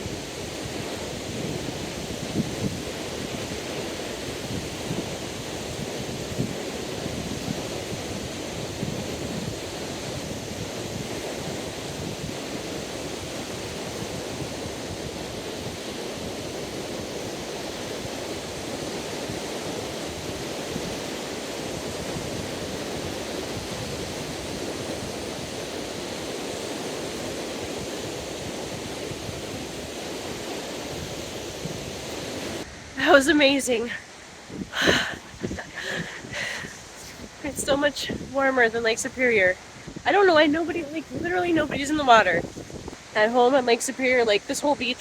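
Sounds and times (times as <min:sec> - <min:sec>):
waves washing onto beach: 0:00.0 - 0:45.0
wind buffeting microphone: 0:00.0 - 0:45.0.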